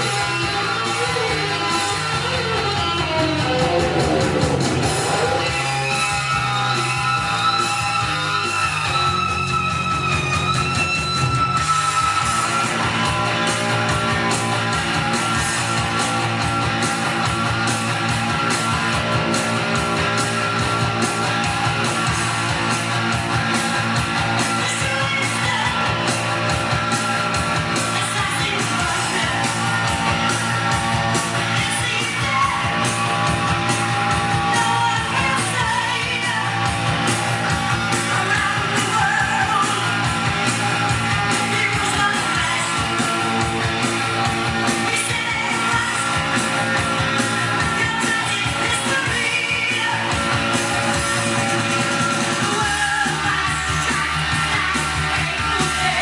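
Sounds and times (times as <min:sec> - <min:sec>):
guitars: 0:00.0 - 0:56.0
person singing: 0:00.2 - 0:06.1, 0:34.4 - 0:36.8, 0:37.8 - 0:40.4, 0:44.7 - 0:56.0.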